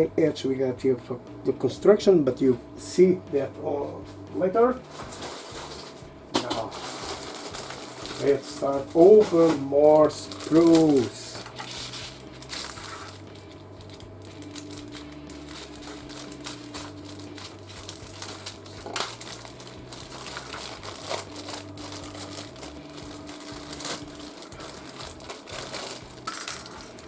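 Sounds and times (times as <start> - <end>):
plastic bags crinkling: 4.9 - 27.0.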